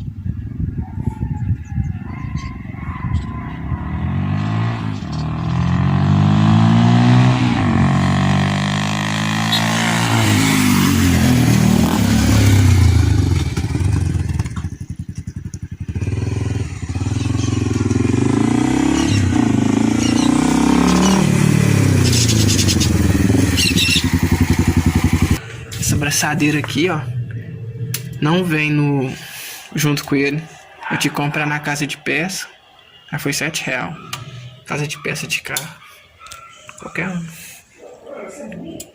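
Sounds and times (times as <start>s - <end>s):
motorcycle engine revving: 2.4s - 28.7s.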